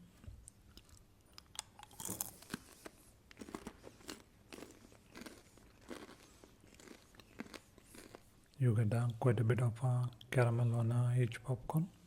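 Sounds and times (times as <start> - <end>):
person chewing crunchy popcorn: 0.7 - 8.6.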